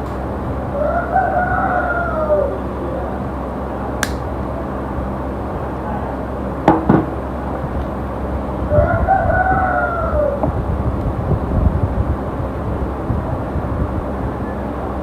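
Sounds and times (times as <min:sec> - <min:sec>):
steady hum: 0:00.0 - 0:15.0
rooster crowing: 0:00.7 - 0:03.1, 0:08.7 - 0:10.5
sharp clicks: 0:04.0 - 0:04.2.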